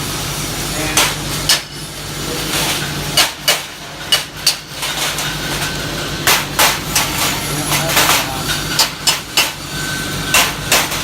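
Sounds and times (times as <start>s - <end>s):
hammer striking metal: 1.0s - 1.8s, 3.2s - 4.7s, 7.8s - 9.6s, 10.3s - 11.0s.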